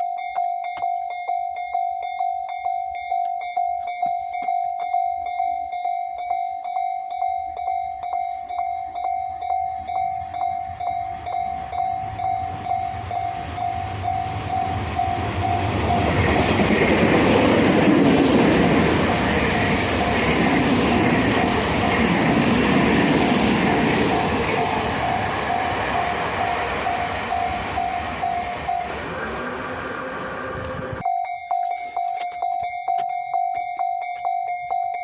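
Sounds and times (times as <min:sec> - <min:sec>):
level-crossing warning bell: 0:00.0 - 0:35.0
train running over crossing: 0:00.0 - 0:35.0.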